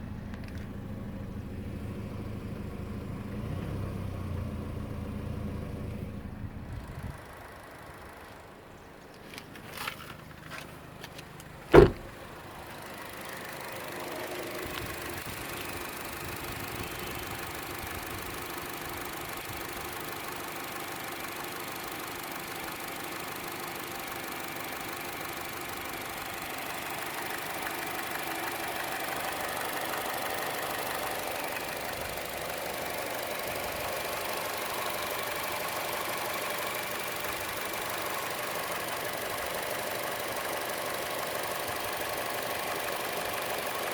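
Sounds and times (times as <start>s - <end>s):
car engine idling with ticking: 0.0s - 43.9s
sharp knock: 11.7s - 12.1s.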